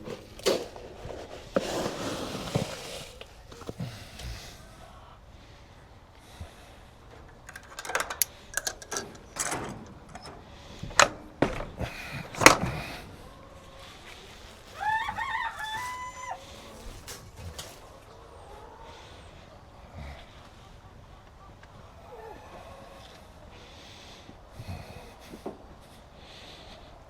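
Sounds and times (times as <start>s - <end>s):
sharp knocks and clatters: 7.2s - 13.1s
rooster crowing: 13.2s - 16.8s.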